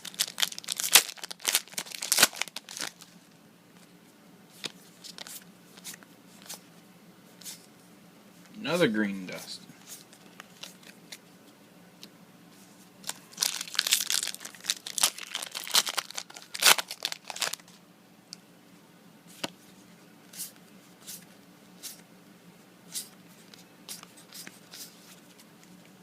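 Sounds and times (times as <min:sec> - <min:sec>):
foil wrapper tearing and crinkling: 0:00.0 - 0:03.0, 0:13.0 - 0:17.6.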